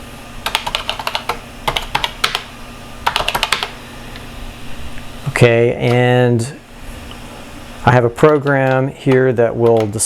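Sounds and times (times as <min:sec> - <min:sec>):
typing on computer keyboard: 0:00.4 - 0:03.8, 0:08.2 - 0:10.0.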